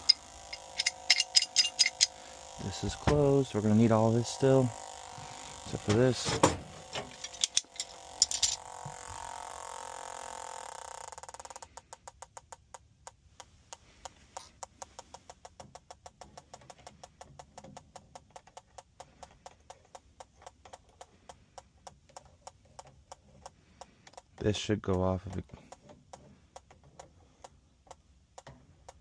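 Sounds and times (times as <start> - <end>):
gas detector fast ticking: 0.0 - 6.2
gas detector whine: 0.0 - 11.8.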